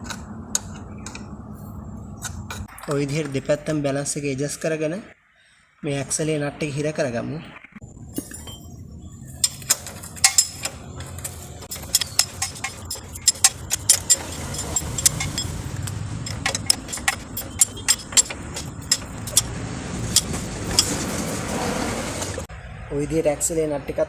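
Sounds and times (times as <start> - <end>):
wrench clicking on metal: 9.4 - 20.9.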